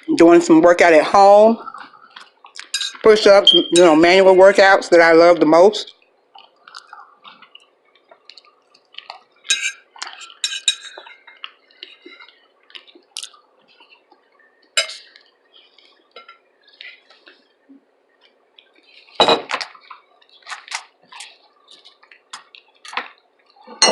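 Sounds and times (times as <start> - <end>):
cutlery clinking against dish: 2.6 - 4.0, 9.5 - 11.4, 14.8 - 15.1, 19.2 - 19.8.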